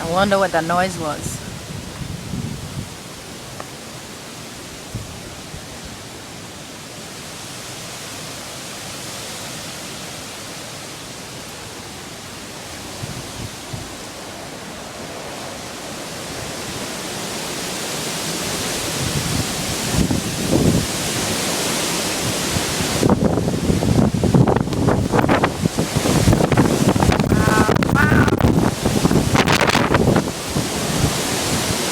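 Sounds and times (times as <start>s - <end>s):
wind buffeting microphone: 0.0s - 3.2s, 12.8s - 14.0s, 18.8s - 21.4s, 22.2s - 31.9s
gale-force wind rushing: 0.0s - 3.5s, 12.7s - 31.9s.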